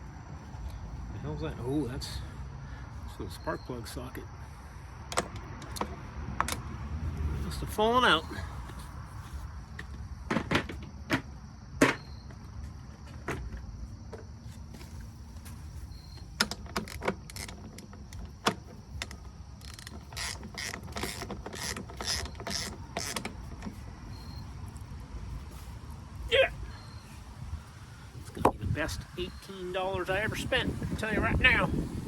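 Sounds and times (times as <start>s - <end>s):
ratcheting clicks: 19.0s - 23.7s.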